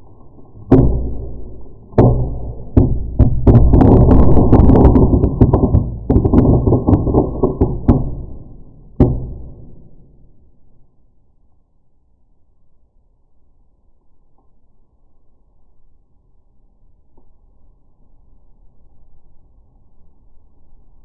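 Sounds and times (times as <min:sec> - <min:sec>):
firework crackling: 0:00.0 - 0:10.0
firework bangs: 0:00.6 - 0:10.3.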